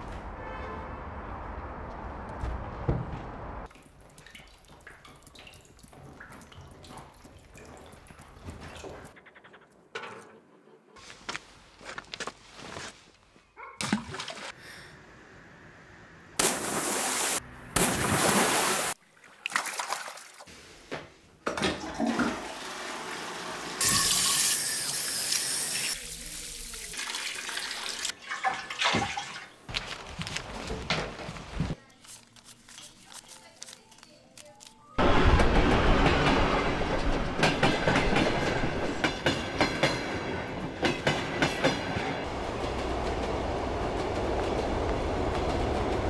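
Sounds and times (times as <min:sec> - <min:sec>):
water running and splashing: 0:03.7 - 0:09.1, 0:25.7 - 0:29.6.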